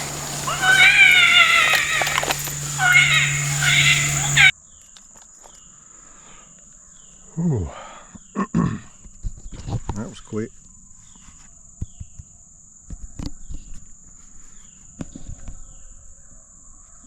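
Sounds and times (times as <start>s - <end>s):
dogs barking: 0.0s - 4.5s
insects droning: 0.0s - 4.5s.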